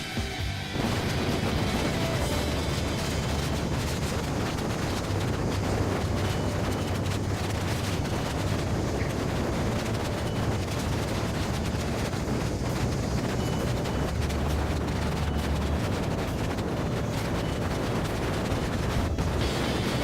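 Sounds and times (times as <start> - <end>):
strong wind buffeting microphone: 0.0 - 20.0.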